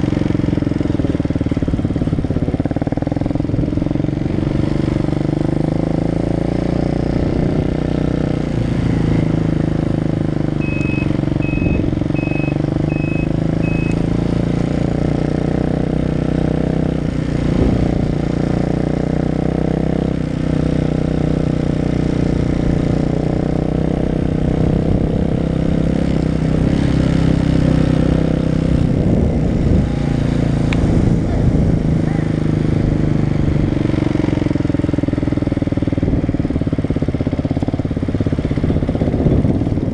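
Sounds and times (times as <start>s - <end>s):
motorcycle engine running: 0.0s - 39.9s
short high beeps: 10.6s - 14.1s.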